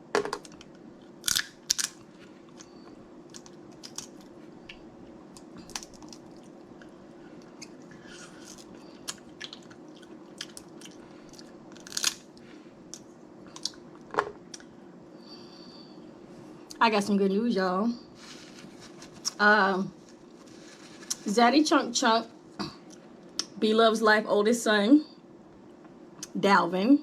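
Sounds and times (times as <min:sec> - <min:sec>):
crab shell cracking: 0:00.4 - 0:12.3
chewing: 0:01.3 - 0:12.2.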